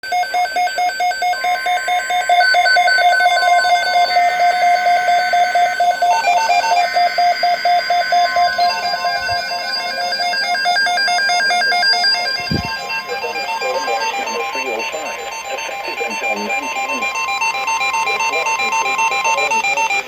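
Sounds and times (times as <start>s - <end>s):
rapid electronic beeping: 0.0s - 20.0s
steady high tone: 0.1s - 20.0s.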